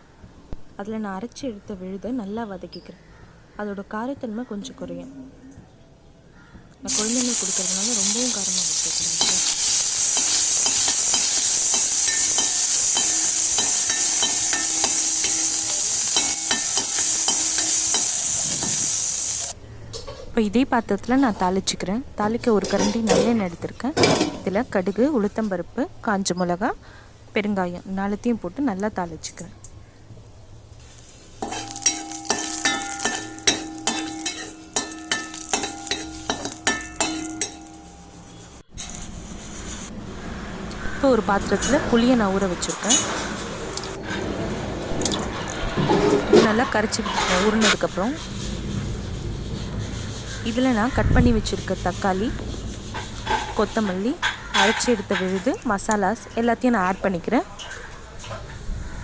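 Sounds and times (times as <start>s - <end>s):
paste sizzling in hot ghee: 6.9s - 19.6s, 30.8s - 37.8s
metal spoon clinking against pan: 8.6s - 18.9s, 31.4s - 38.2s.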